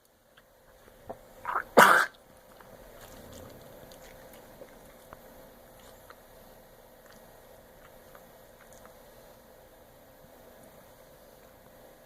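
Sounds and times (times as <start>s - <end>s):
dog coughing harshly: 1.5s - 2.2s.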